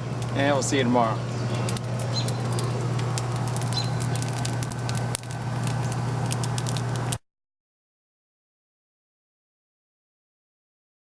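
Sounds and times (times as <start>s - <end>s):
constant low hum: 0.0s - 7.2s
food sizzling on a grill: 0.0s - 7.2s
sharp pops: 1.6s - 7.2s.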